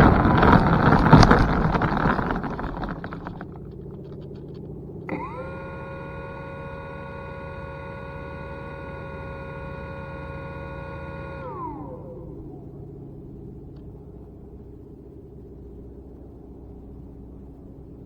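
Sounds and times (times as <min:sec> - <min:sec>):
motor noise: 0:00.0 - 0:14.2
wind: 0:00.0 - 0:18.0.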